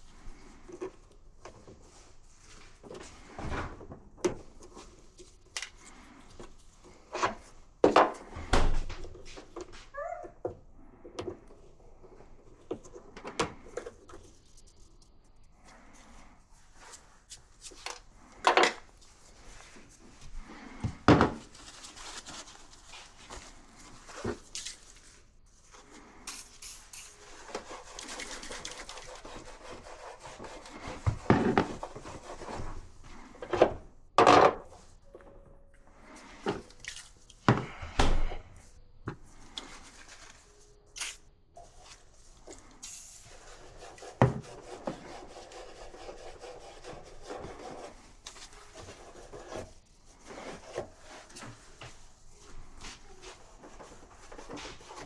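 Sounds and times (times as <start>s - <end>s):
rubbing and scraping: 21.4s - 33.6s, 39.3s - 55.0s.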